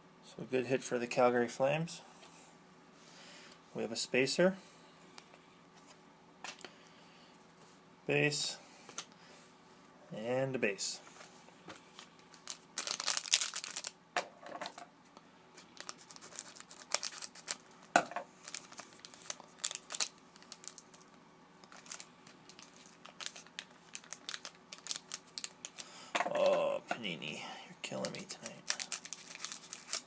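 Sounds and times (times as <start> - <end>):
card pack wrapper crinkling: 11.9 - 14.0, 15.6 - 26.7, 27.9 - 30.0
cards being handled: 28.0 - 30.0.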